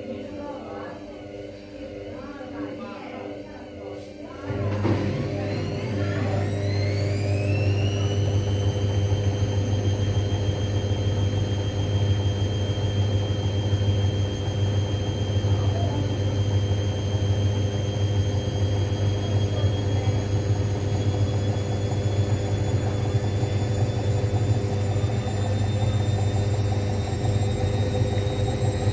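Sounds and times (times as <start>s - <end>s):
washing machine motor whine: 0.0s - 28.9s
low hum: 17.4s - 28.9s.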